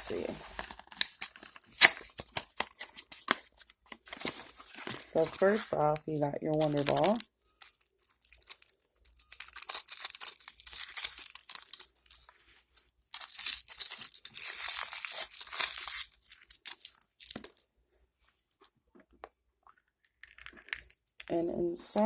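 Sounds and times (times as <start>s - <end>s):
foil wrapper tearing and crinkling: 0.0s - 5.8s, 6.6s - 17.6s.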